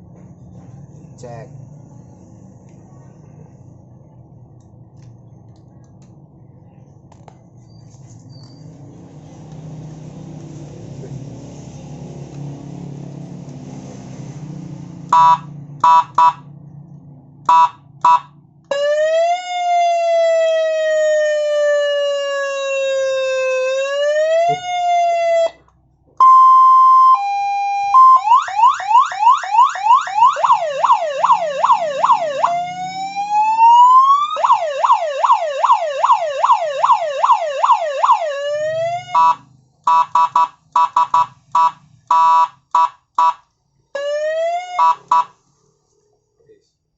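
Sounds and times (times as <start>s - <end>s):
faint low hum: 0.0s - 11.9s
police siren wailing and yelping: 15.1s - 16.4s, 17.5s - 25.6s, 26.2s - 43.4s, 44.0s - 45.4s
short police horn blasts: 39.2s - 43.4s.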